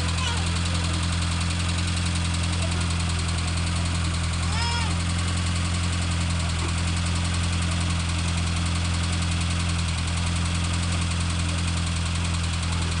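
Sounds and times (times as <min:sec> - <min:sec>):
engine running steadily: 0:00.0 - 0:13.0.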